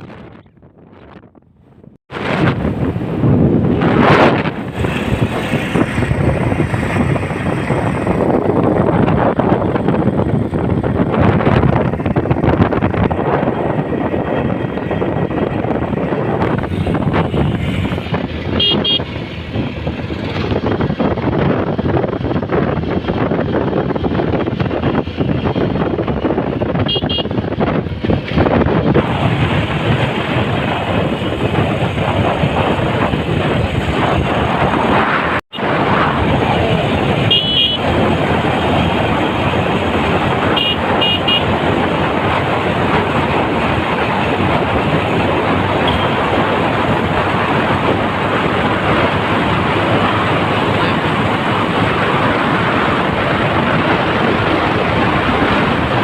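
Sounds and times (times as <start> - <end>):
motorcycle wind and road noise: 0.0 - 56.0
vehicle horn toots: 18.5 - 19.1, 26.8 - 27.3, 37.2 - 37.9, 40.5 - 41.6, 45.8 - 46.2.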